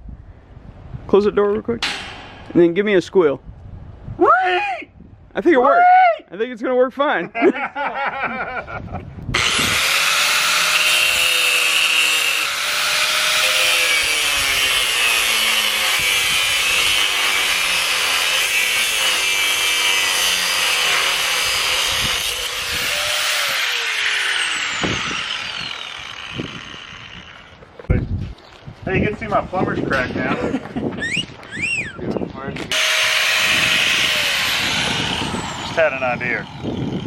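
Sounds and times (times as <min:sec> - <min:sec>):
grinder spinning down: 0:09.3 - 0:27.6, 0:32.7 - 0:37.0
angle grinder grinding steel: 0:09.4 - 0:27.6, 0:32.7 - 0:37.0.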